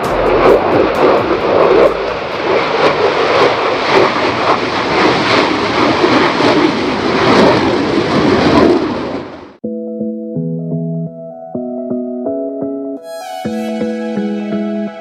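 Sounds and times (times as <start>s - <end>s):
fighter jet engine roaring: 0.0s - 9.6s.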